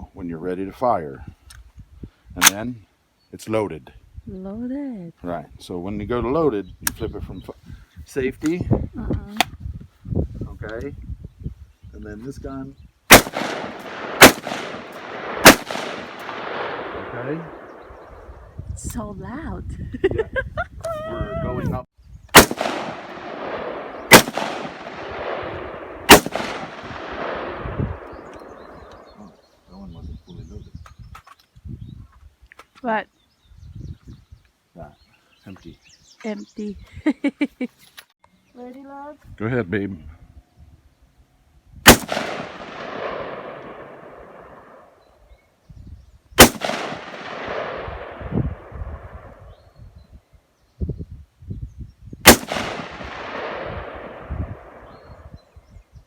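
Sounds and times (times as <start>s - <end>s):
gunshots echoing: 13.1s - 18.1s, 22.3s - 29.1s, 41.9s - 44.8s, 46.4s - 49.3s, 52.2s - 55.0s.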